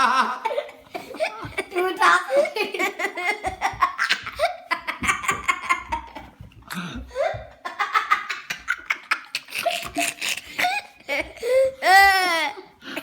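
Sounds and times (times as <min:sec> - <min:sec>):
hearty laughter with giggles: 0:00.0 - 0:13.0.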